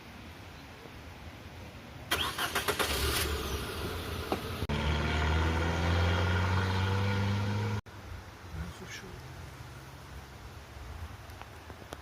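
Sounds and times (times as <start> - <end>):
engine running: 2.1 - 7.8.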